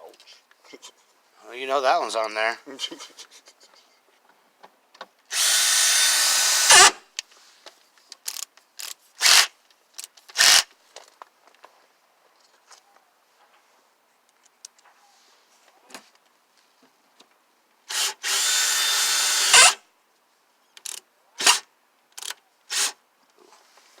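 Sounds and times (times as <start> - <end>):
power drill spinning: 5.3 - 7.0, 9.2 - 9.5, 17.9 - 19.8, 22.7 - 23.0.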